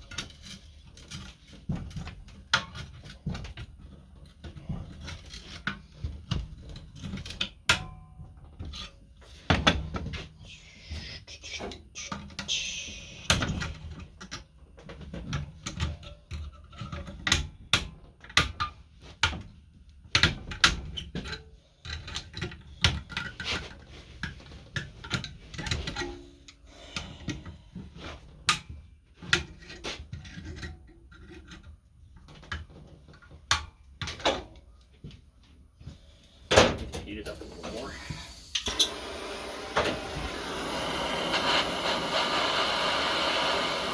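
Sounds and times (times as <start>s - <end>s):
brief hiss: 10.6s - 13.6s.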